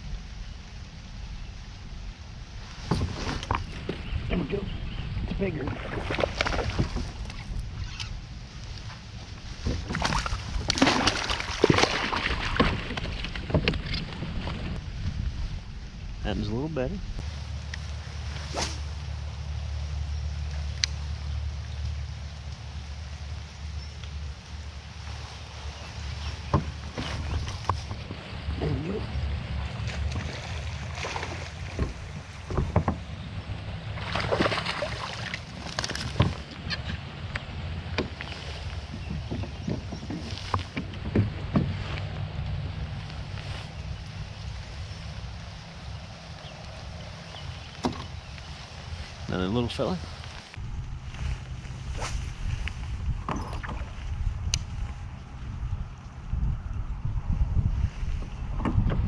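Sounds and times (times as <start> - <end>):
steady low rumble: 0.0 - 59.0
knocks and rattles on kayak: 2.8 - 8.0, 9.4 - 14.8, 26.3 - 28.3, 29.6 - 37.1, 37.7 - 42.6, 47.4 - 48.4, 52.8 - 55.0, 58.2 - 59.0
water splashing: 5.3 - 7.6, 9.6 - 14.7, 26.6 - 33.0, 33.6 - 37.0
knocks against a kayak: 31.1 - 33.0.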